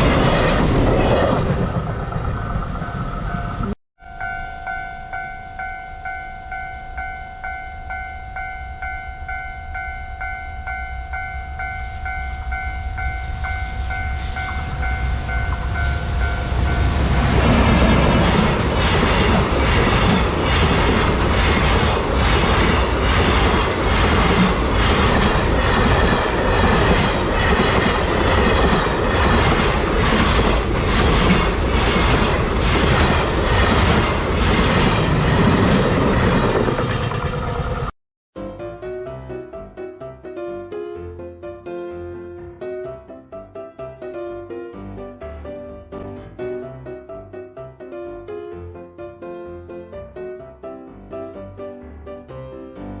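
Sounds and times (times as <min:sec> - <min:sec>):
level-crossing warning bell ringing: 0:02.8 - 0:17.8
train wheels clacking over rail joints: 0:17.5 - 0:37.9.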